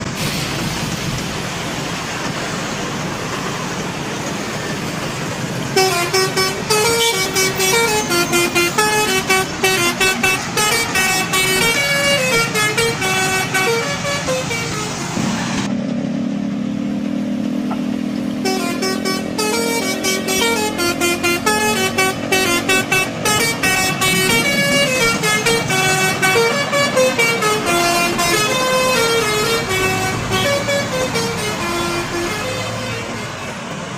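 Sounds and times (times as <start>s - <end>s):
road and engine noise: 0.0s - 33.9s
bus horn playing a tune: 5.7s - 15.1s, 17.7s - 33.7s.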